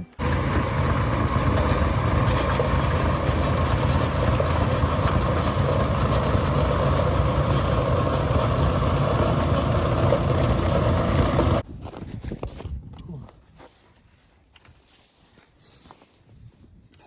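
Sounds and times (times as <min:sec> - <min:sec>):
heavy engine running: 0:00.0 - 0:11.6.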